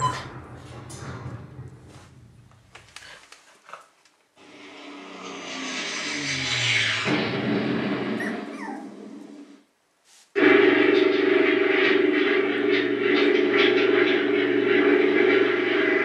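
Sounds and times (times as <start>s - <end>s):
puppies whimpering and growling: 0.0s - 0.3s, 8.2s - 9.0s.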